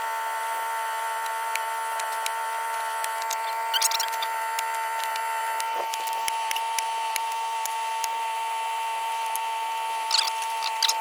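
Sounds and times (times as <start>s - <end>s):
auger drilling whine: 0.0s - 11.0s
sharp cracks and ticks: 1.2s - 8.2s, 9.2s - 9.5s, 10.1s - 11.0s.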